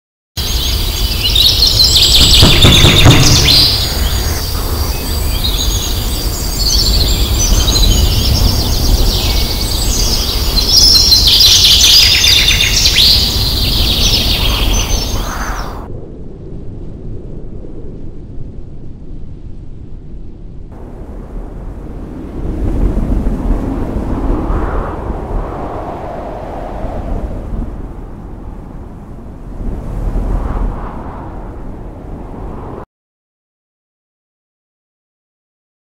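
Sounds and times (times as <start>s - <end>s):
birds chirping and singing: 0.4s - 15.9s
low rumble: 1.0s - 11.1s, 13.1s - 32.8s.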